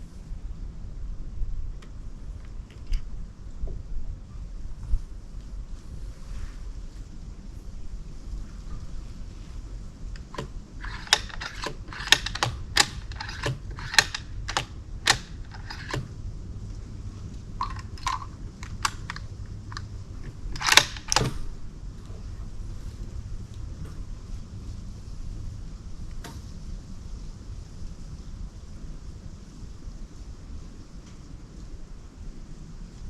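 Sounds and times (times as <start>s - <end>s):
gear clicks and knocks: 10.1s - 16.2s, 17.3s - 21.5s.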